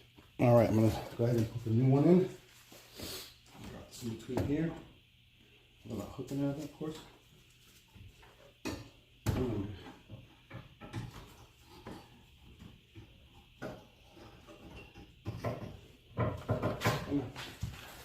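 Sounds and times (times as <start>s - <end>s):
metal knocks and clunks: 14.4s - 17.3s.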